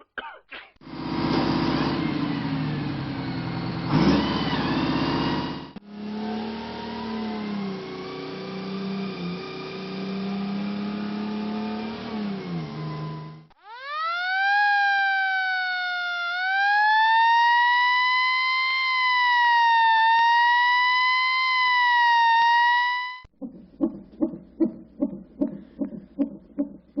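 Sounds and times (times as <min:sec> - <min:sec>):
siren wailing: 0:11.8 - 0:24.0
rapid low pulsing: 0:23.3 - 0:27.0.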